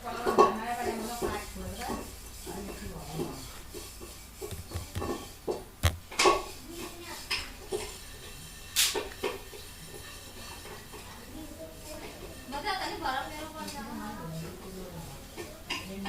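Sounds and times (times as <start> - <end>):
low steady background noise: 0.0 - 16.0
hard objects clicking and clinking: 4.4 - 6.4.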